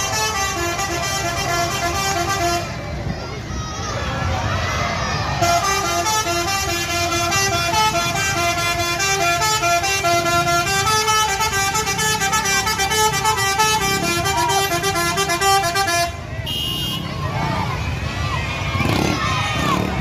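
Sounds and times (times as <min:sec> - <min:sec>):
bus musical horn playing tune: 0:00.0 - 0:02.8, 0:05.4 - 0:17.0.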